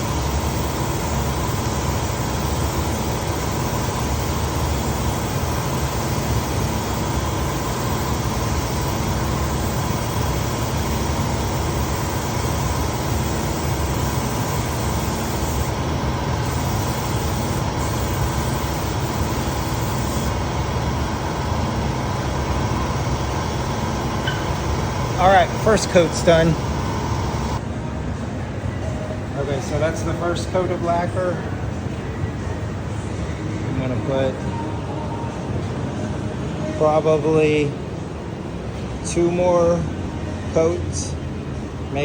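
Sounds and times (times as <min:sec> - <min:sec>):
motor drone: 0:00.0 - 0:27.6
spray gun hissing: 0:00.0 - 0:27.6.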